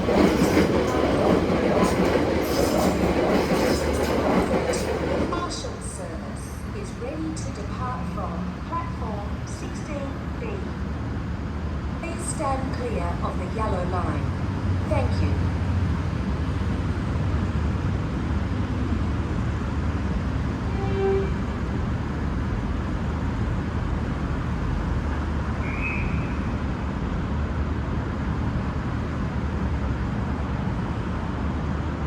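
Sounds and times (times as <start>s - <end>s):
short tone: 20.7s - 21.4s.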